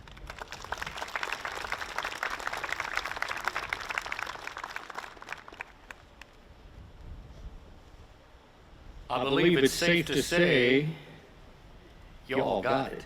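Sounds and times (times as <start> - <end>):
audience applauding: 0.0 - 6.3.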